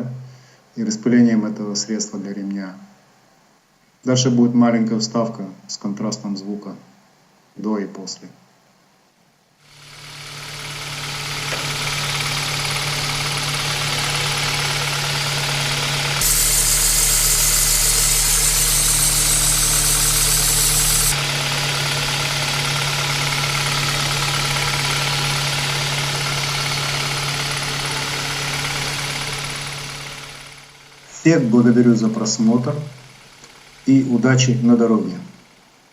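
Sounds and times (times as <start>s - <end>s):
car engine idling: 9.8s - 34.7s, 35.4s - 35.8s
drive belt squealing: 10.3s - 34.7s.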